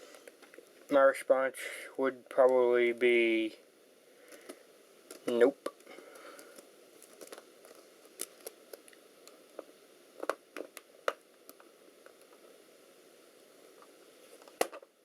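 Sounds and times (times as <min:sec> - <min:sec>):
plastic laptop case clicking: 0:14.4 - 0:14.9.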